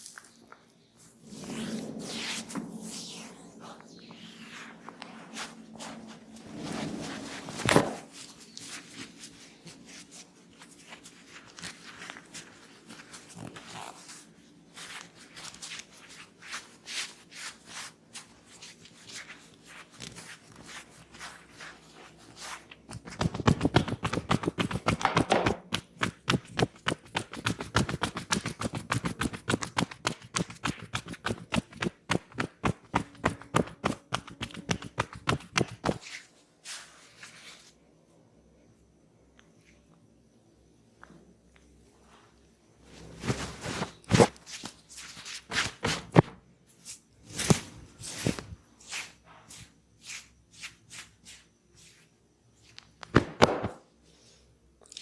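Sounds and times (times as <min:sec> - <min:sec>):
hands rubbing and tapping head: 0:22.4 - 0:36.0
fast run of massage pats: 0:22.9 - 0:36.0, 0:53.1 - 0:53.8.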